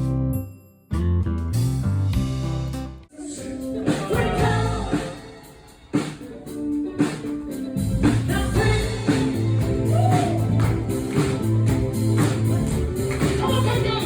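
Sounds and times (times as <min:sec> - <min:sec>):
bass line: 0:00.0 - 0:03.1, 0:03.8 - 0:05.2, 0:07.7 - 0:14.0
guitar: 0:00.9 - 0:14.0
drums: 0:01.5 - 0:14.0
person singing: 0:03.1 - 0:07.3.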